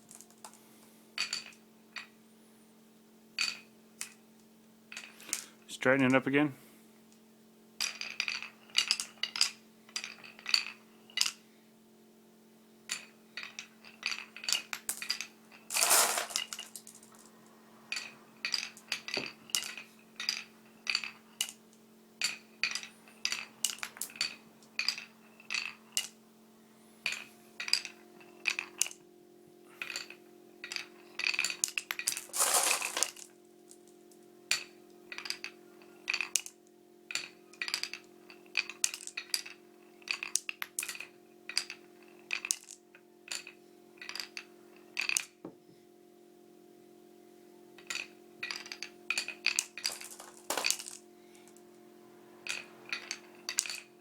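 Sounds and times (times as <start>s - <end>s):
marbles clicking on marble run: 12.9s - 17.3s, 29.8s - 33.8s, 37.1s - 45.3s, 47.8s - 51.0s, 52.5s - 53.9s.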